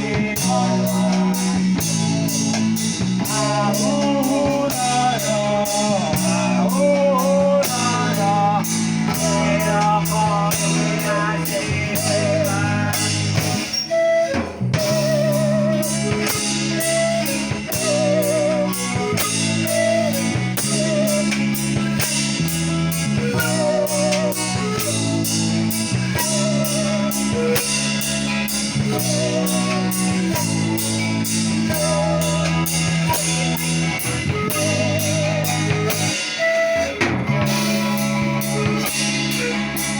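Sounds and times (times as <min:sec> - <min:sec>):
person singing with vibrato: 0:00.0 - 0:14.3, 0:23.0 - 0:39.9
drums beat: 0:00.0 - 0:39.9
guitar: 0:00.0 - 0:39.9
pan pipes: 0:00.0 - 0:39.9.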